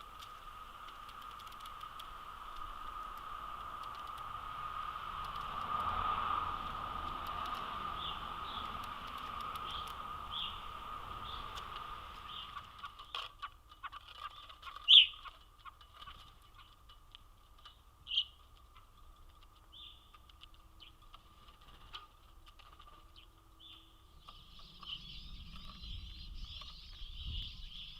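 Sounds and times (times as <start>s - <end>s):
steady hiss: 0.0s - 13.0s
birds chirping: 0.0s - 27.9s.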